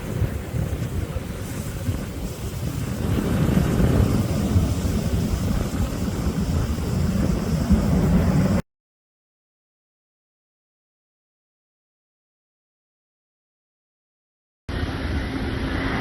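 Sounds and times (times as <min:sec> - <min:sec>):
jet engines rumbling: 0:00.0 - 0:08.6, 0:14.7 - 0:16.0.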